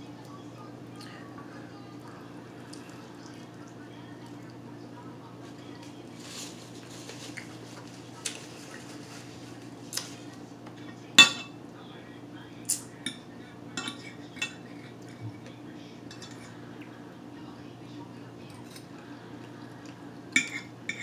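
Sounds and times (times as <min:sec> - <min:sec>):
steady low hum: 0:00.0 - 0:21.0
cutlery clinking on a plate: 0:11.2 - 0:11.6, 0:13.8 - 0:15.2, 0:16.1 - 0:16.5, 0:20.4 - 0:21.0.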